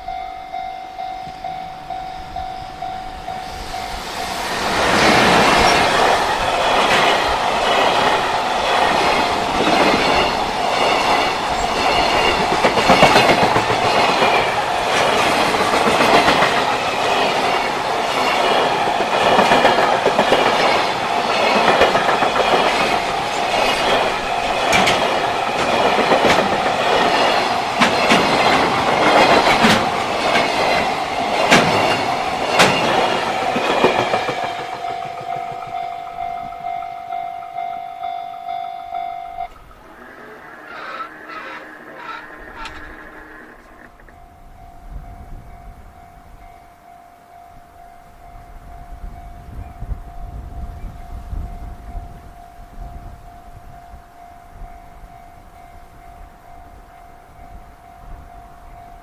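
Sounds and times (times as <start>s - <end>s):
level crossing bell ringing: 0.0s - 4.1s, 34.6s - 40.4s
freight train passing: 0.0s - 59.0s
wheels clacking over rail joints: 3.4s - 44.3s.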